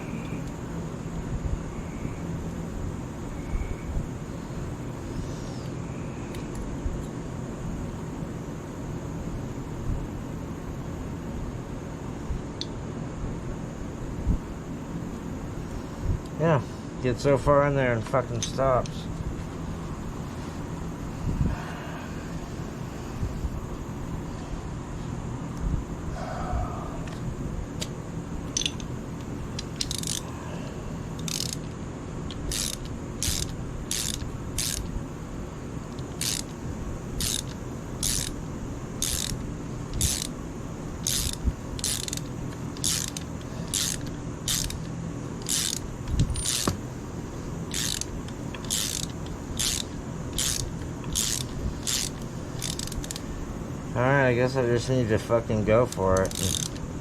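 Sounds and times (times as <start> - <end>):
steady low hum: 0.0 - 57.0
ratchet wrench clicking: 28.5 - 30.3, 31.2 - 35.0, 35.9 - 36.6, 37.2 - 38.4, 39.0 - 40.4, 41.0 - 46.8, 47.7 - 53.4, 55.8 - 56.9.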